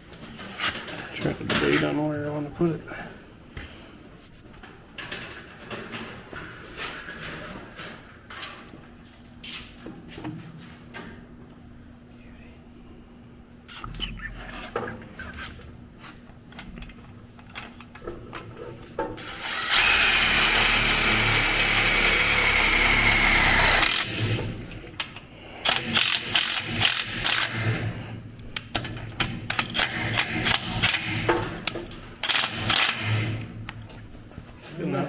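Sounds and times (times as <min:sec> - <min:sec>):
power tool motor running: 0:19.2 - 0:24.4.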